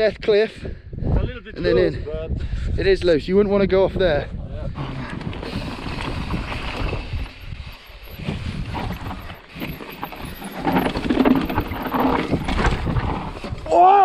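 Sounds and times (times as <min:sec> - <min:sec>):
rumbling noise: 0:04.7 - 0:13.7
bike tyres crunching on dirt: 0:05.4 - 0:13.7.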